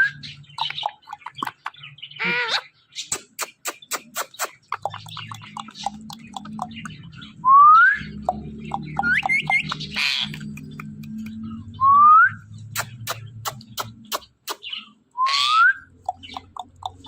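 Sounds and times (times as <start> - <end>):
parrot clicking and chirping: 0.4 - 7.2, 8.1 - 11.4, 12.7 - 14.9, 15.8 - 17.0
parrot squawk: 2.2 - 4.6, 9.2 - 10.4, 12.8 - 16.5.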